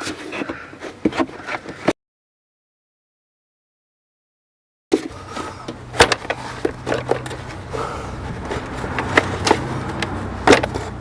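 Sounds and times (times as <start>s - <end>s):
plastic parts clicking and knocking: 5.0s - 7.6s, 8.4s - 11.0s.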